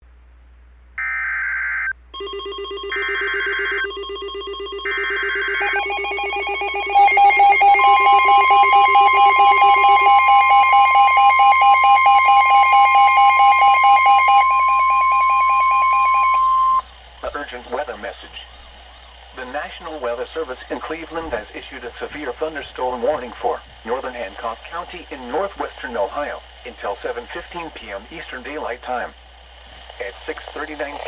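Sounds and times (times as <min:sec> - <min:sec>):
pulsing electronic alarm beeping: 0:02.2 - 0:18.8
steady warning alarm tone: 0:02.2 - 0:29.1
digital data screech: 0:05.6 - 0:18.6.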